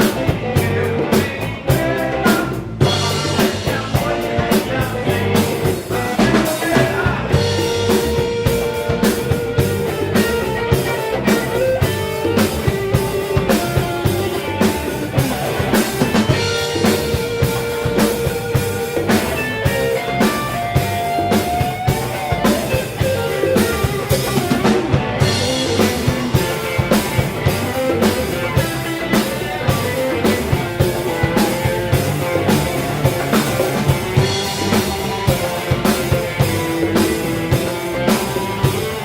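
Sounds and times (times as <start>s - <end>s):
drum kit steady beat: 0.0s - 39.0s
guitar long held lead notes: 0.0s - 39.0s.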